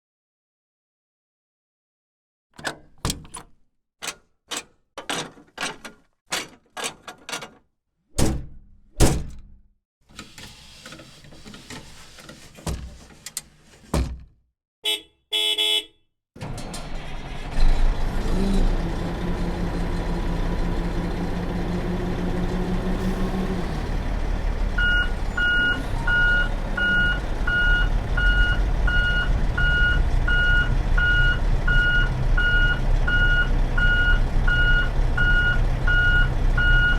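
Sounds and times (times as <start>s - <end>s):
sharp clicks and thunks: 2.6s - 7.6s, 8.2s - 9.6s
diesel engine running: 16.4s - 36.9s.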